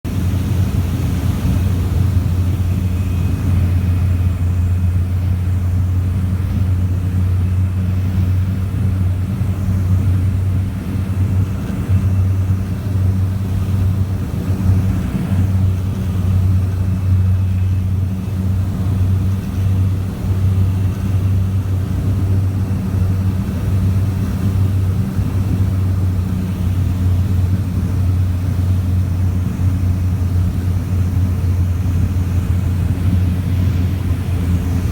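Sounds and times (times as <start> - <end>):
turboprop engines droning: 0.0 - 34.9.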